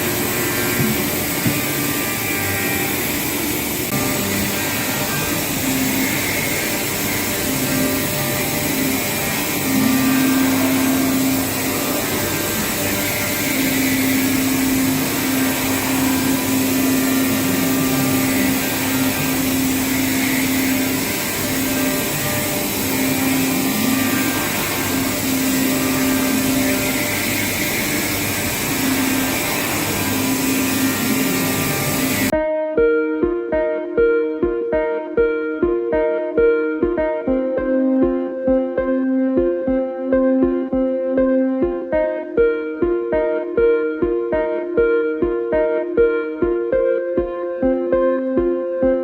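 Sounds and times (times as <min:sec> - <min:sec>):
motor whines: 0:00.0 - 0:32.3
cnc machine machining: 0:00.0 - 0:32.4
low hum: 0:00.0 - 0:32.4.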